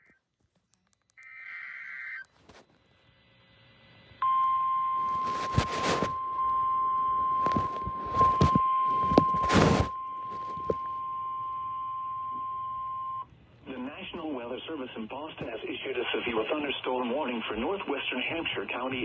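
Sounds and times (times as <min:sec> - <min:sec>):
short bursts of noise: 0:05.0 - 0:06.2.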